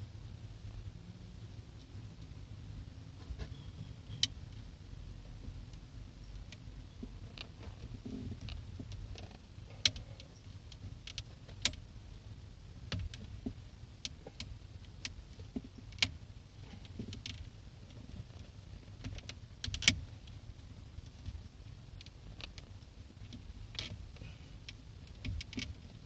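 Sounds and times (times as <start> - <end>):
low steady rumble: 0.0 - 26.0.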